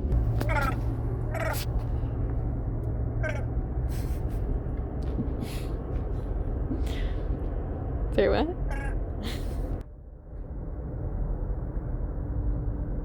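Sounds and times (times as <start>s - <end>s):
car road noise: 0.0s - 13.0s
cat meowing: 0.4s - 1.7s, 3.2s - 3.5s, 8.7s - 9.0s.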